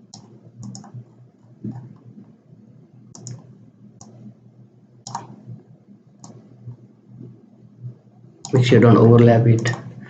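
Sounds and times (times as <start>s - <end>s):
computer mouse clicking: 0.0s - 2.1s, 3.1s - 4.3s, 5.0s - 5.6s, 6.2s - 7.4s, 9.6s - 10.0s
faint low hum: 0.0s - 10.0s.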